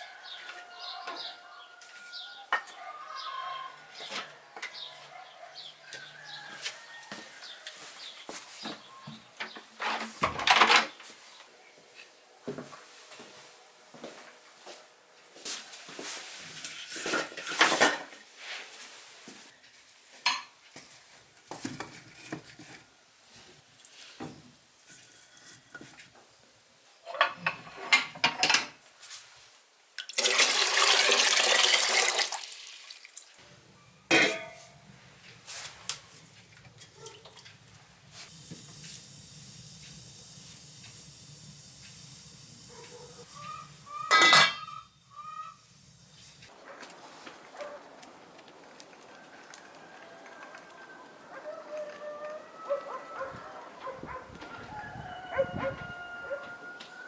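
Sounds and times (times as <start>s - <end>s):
dishes and utensils clattering: 9.8s - 11.0s, 17.0s - 18.2s, 27.1s - 28.8s, 34.1s - 34.8s, 44.0s - 44.9s
running water: 30.0s - 33.4s.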